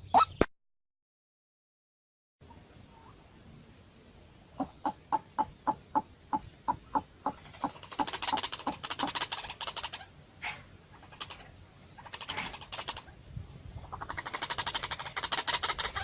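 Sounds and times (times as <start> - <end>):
fowl clucking: 4.6 - 13.1, 13.8 - 16.0.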